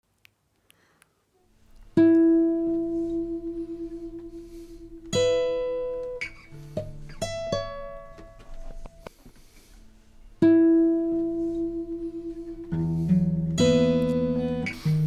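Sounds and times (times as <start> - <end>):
plucked instrument notes ringing: 1.9 - 9.1, 10.4 - 15.0.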